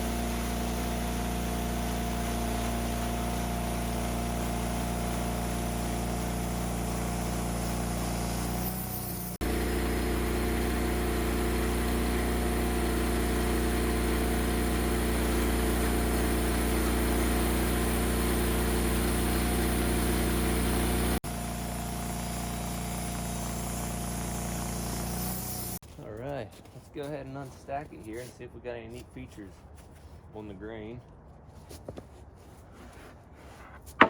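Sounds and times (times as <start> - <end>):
sawmill running: 0.0 - 25.9.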